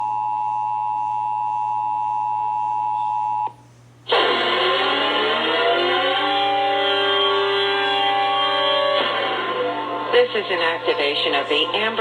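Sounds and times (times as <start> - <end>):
loud music: 4.1 - 12.0.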